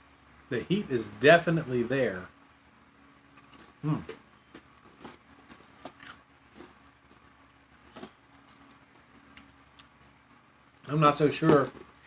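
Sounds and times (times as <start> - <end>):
low room hum: 0.0 - 12.0
mouth clicks and smacks eating: 3.3 - 6.8.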